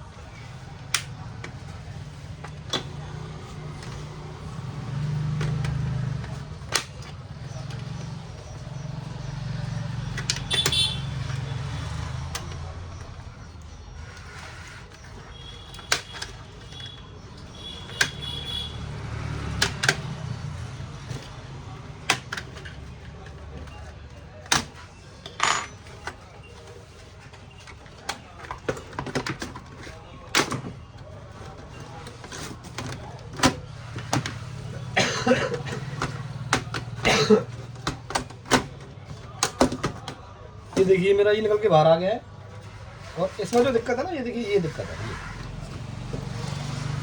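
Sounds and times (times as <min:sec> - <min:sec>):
plastic clips snapping loose: 0:00.8 - 0:01.2
plastic case clicking and snapping: 0:00.9 - 0:01.6.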